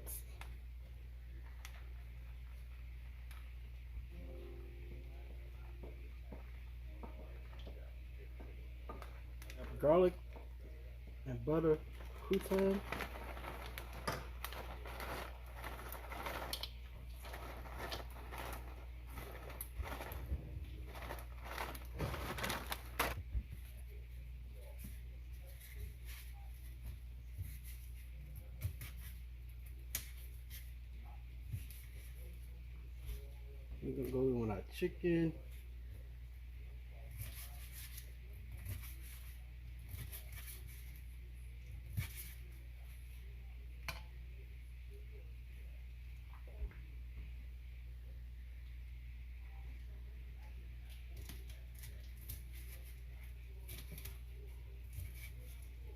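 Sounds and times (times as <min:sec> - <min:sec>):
steady low hum: 0:00.0 - 0:55.9
croutons pouring clicks and rustling: 0:12.0 - 0:23.2.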